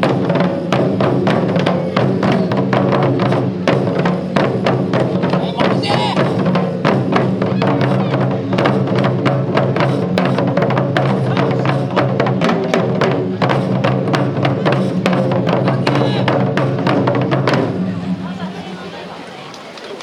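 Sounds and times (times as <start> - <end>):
taiko drums drumming fast: 0.0 - 19.1.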